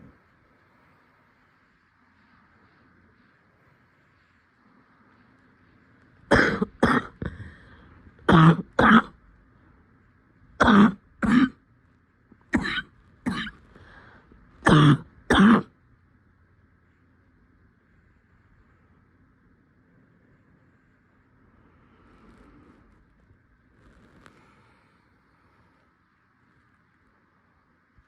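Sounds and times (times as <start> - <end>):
person coughing: 6.3 - 9.2, 10.6 - 11.6, 12.5 - 13.6, 14.6 - 15.7.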